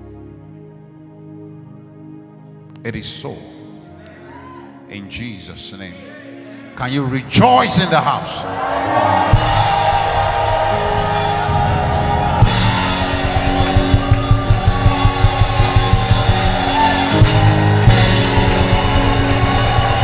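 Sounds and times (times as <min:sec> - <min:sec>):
band playing upbeat music: 0:08.7 - 0:20.0
fast drum-kit beat: 0:09.3 - 0:20.0.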